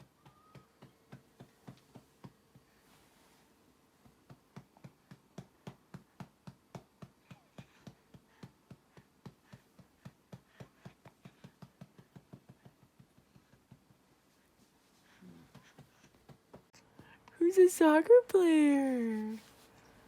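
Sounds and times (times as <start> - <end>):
soft rapid tapping: 4.0 - 17.4.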